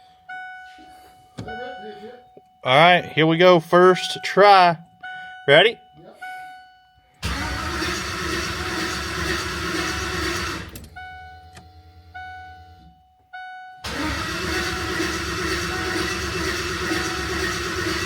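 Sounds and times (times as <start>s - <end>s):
car engine cranking on starter: 7.2s - 11.0s, 13.8s - 18.0s.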